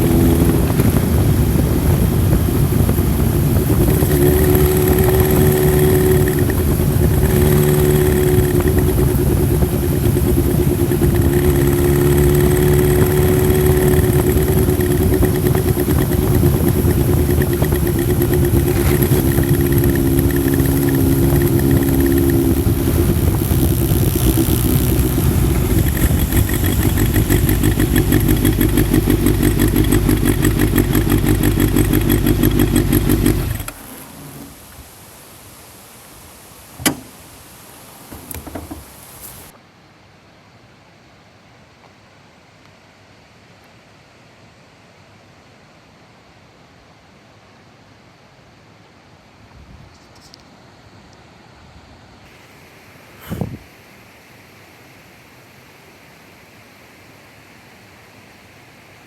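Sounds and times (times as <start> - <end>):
motorcycle engine revving: 0.0 - 34.7.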